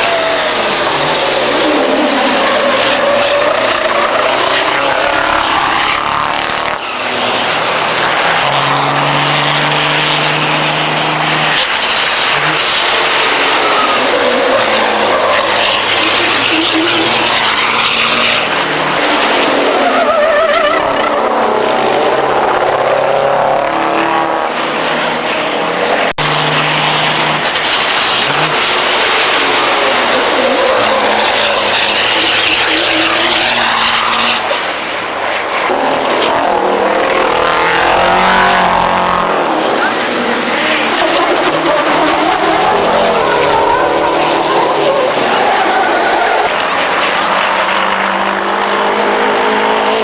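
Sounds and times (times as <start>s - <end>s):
truck engines revving: 0.0s - 50.0s.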